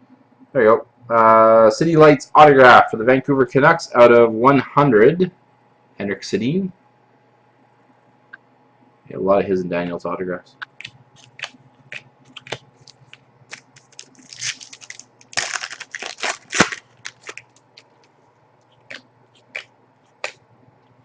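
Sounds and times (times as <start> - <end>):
cards clicking and snapping: 10.6 - 17.9
wrapper crinkling and tearing: 11.2 - 18.1.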